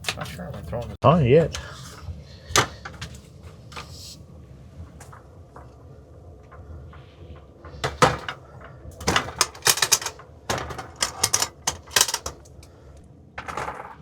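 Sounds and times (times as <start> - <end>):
low steady hum: 0.6 - 13.6
cookware clattering: 7.8 - 8.4, 9.0 - 12.7.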